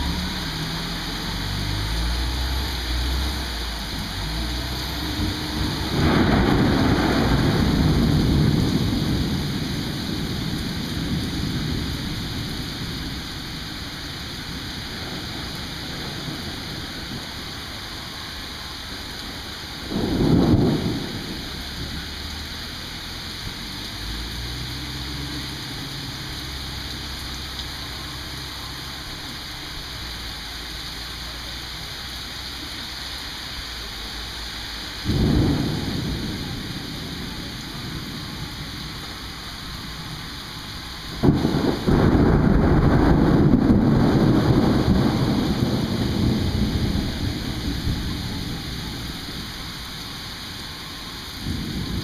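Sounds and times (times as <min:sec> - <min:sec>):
rain hissing: 0:00.0 - 0:52.0
thunder booms: 0:04.9 - 0:13.2, 0:19.8 - 0:22.0, 0:35.0 - 0:39.1, 0:41.1 - 0:49.6.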